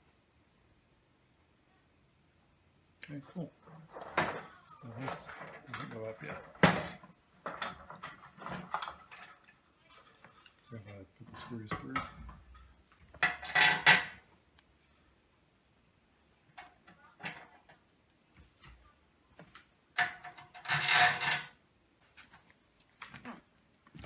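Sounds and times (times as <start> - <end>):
screws clattering on sheet metal: 3.8 - 14.2, 20.0 - 21.6.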